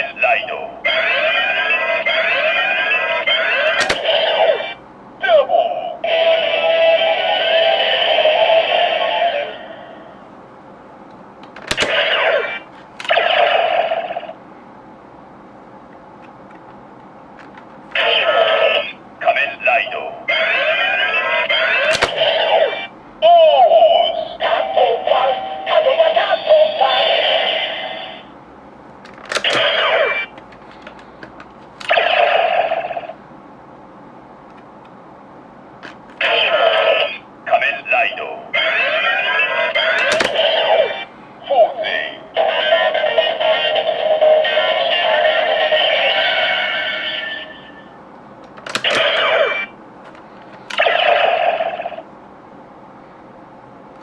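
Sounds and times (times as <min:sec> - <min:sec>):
synthesized voice calls: 0:00.0 - 0:10.2, 0:11.7 - 0:14.4, 0:17.9 - 0:28.3, 0:29.3 - 0:30.3, 0:31.8 - 0:33.2, 0:36.2 - 0:48.0, 0:48.7 - 0:49.7, 0:50.7 - 0:52.1
toy electronic sound effects: 0:03.6 - 0:04.6, 0:39.9 - 0:40.8
sharp mechanical clicks: 0:29.0 - 0:32.0, 0:40.0 - 0:40.4, 0:48.4 - 0:49.3.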